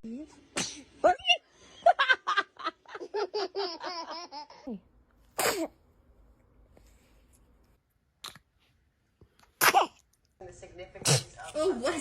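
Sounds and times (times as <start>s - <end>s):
baby sneeze: 0.5s - 0.9s, 5.4s - 5.8s, 9.6s - 10.0s, 11.0s - 11.4s
laughter: 1.6s - 4.1s.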